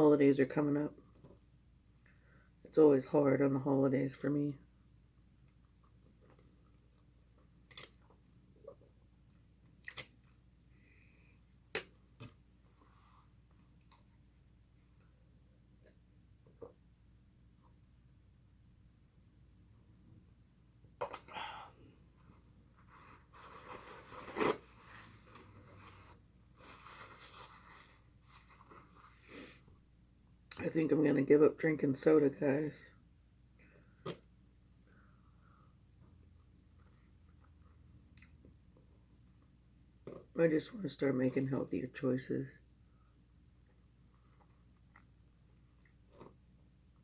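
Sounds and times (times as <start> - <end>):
quiet chewing: 5.2 - 9.0, 9.6 - 10.5, 43.0 - 46.6.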